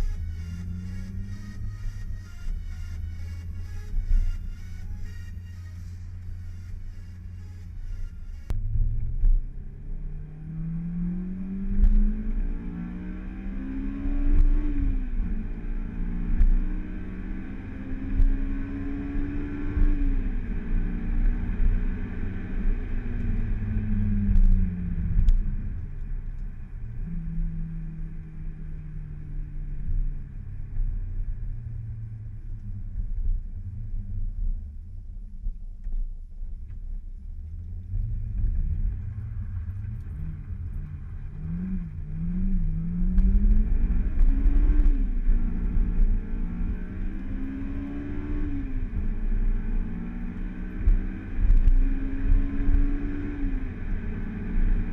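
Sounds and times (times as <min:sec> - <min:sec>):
car engine revving: 0:00.0 - 0:25.8, 0:37.7 - 0:54.9.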